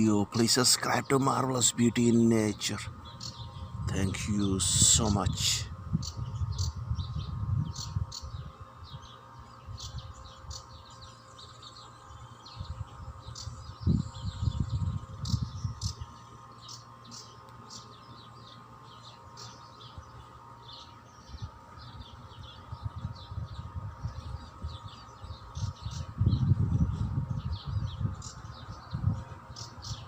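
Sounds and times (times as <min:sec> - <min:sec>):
low rumbling noise: 0:00.0 - 0:30.0
small birds chirping: 0:00.0 - 0:30.0.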